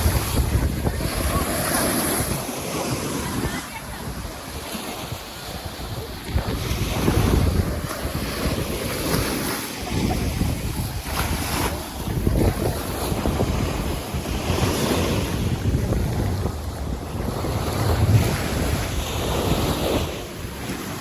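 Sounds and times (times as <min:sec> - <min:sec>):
sea water splashing: 0:00.0 - 0:21.0
wind buffeting microphone: 0:00.0 - 0:21.0.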